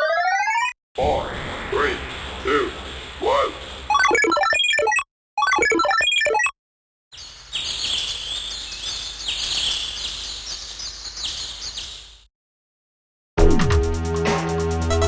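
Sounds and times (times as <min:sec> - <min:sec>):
steady hiss: 0:01.0 - 0:03.9
high bird chirps ringtone: 0:03.9 - 0:06.5.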